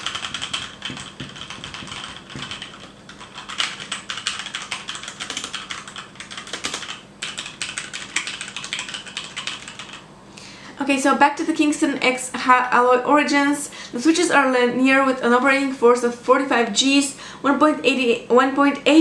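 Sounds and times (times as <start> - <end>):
fast typing on mechanical keyboard: 0.0 - 10.0.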